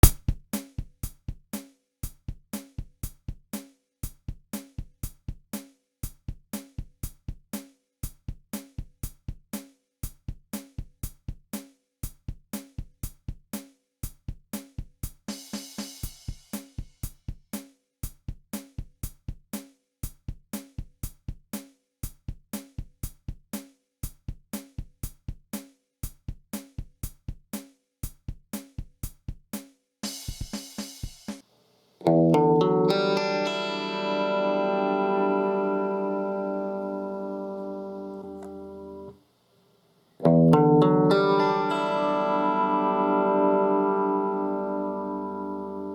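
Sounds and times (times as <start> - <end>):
drum beat: 0.0 - 31.7.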